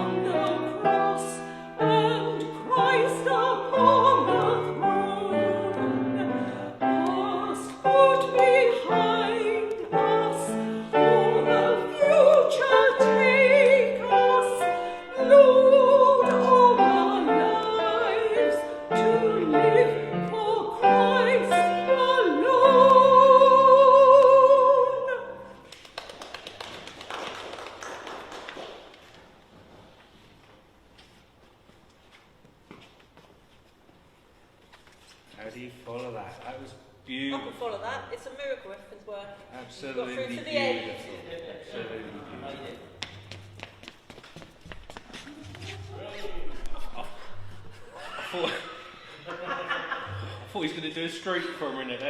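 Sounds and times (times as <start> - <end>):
classical solo singing: 0.0 - 25.6.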